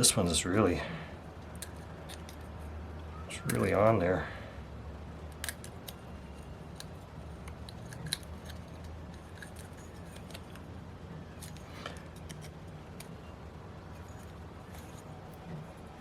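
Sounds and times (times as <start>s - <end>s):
tool clicking and scraping: 5.3s - 10.7s, 11.3s - 13.3s, 13.9s - 15.9s.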